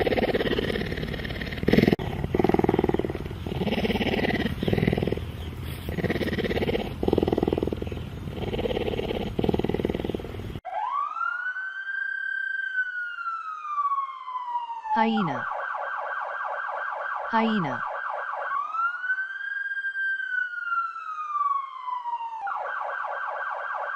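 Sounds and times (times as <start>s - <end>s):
cheetah rough pulsing calls: 0.0s - 10.6s
siren-like sweeping tone: 10.7s - 17.2s.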